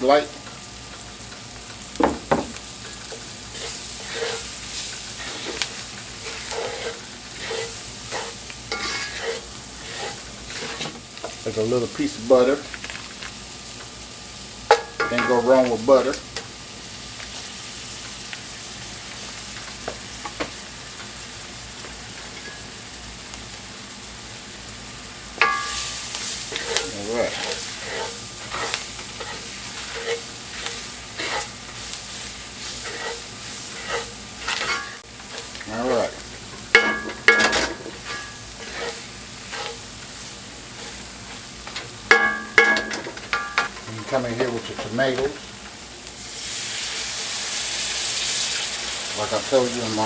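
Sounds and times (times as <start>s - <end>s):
frying hiss in a pan: 0.0s - 50.0s
stirring utensil taps: 26.5s - 45.5s.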